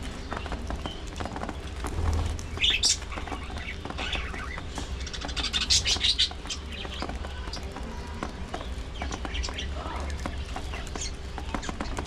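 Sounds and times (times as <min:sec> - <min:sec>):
budgerigars chirping: 0:02.5 - 0:07.0.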